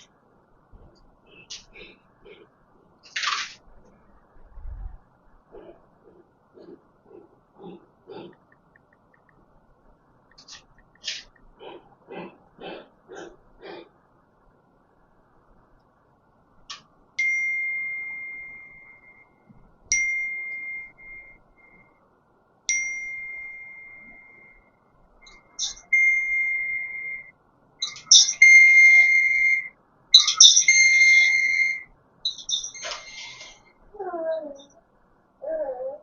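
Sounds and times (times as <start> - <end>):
electronic ding chimes: 17.2 - 19.3, 19.9 - 21.8, 22.7 - 24.7, 25.4 - 28.4.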